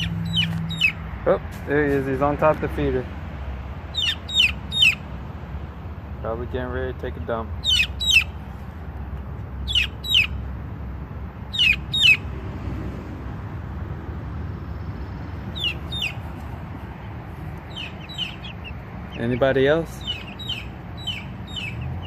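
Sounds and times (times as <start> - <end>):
young chickens peeping: 0.0 - 1.1, 3.7 - 5.2, 7.1 - 10.6, 11.4 - 12.3, 14.8 - 22.0
steady low rumble: 13.2 - 22.0.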